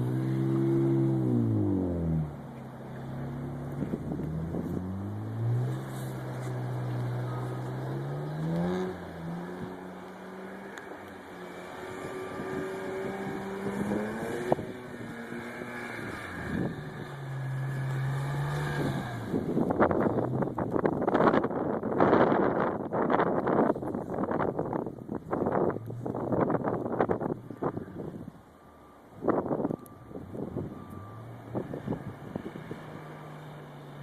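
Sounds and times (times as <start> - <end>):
car engine revving: 0.0 - 21.4.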